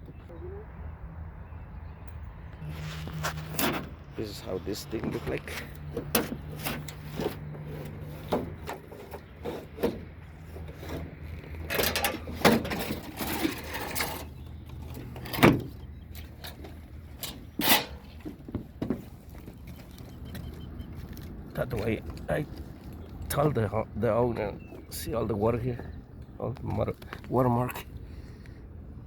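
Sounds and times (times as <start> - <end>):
scraping rub: 2.6 - 4.4, 5.0 - 15.4.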